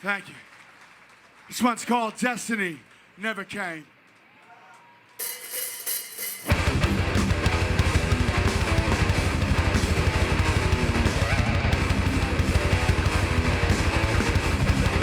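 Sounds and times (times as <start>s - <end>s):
fast driving drums: 5.2s - 15.0s
distorted electric guitars strumming: 6.4s - 15.0s.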